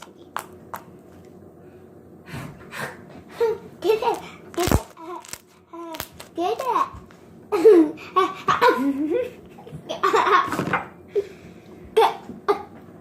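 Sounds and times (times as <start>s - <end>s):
children laughing: 7.5s - 10.7s.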